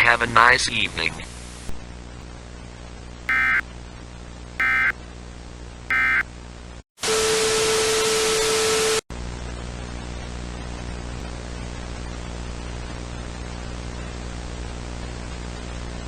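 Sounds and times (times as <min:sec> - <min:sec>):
digital data bursts: 0:03.3 - 0:03.6, 0:04.6 - 0:04.9, 0:05.9 - 0:06.2
loud static with steady tone: 0:03.3 - 0:03.6, 0:04.6 - 0:04.9, 0:05.9 - 0:06.2.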